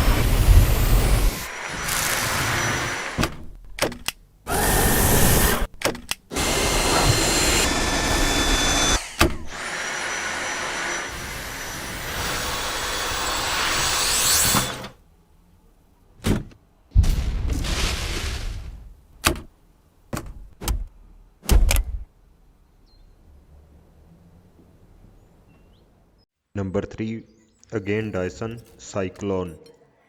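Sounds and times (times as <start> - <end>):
vacuum cleaner running: 0.0 - 3.2, 6.3 - 14.9.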